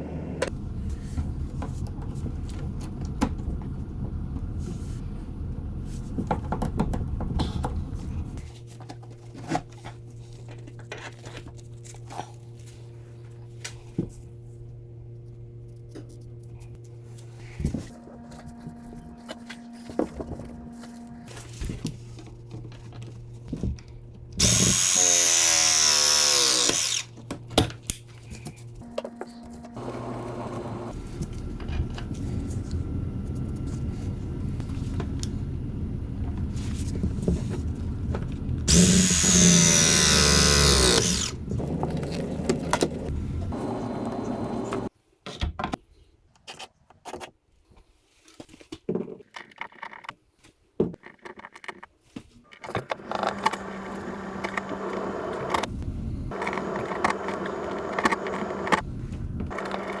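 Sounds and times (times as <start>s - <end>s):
steady work noise: 15.3s - 44.9s, 52.7s - 60.0s
power drill running: 24.4s - 27.1s, 29.8s - 31.0s, 38.7s - 41.6s, 43.5s - 44.9s, 53.1s - 55.6s.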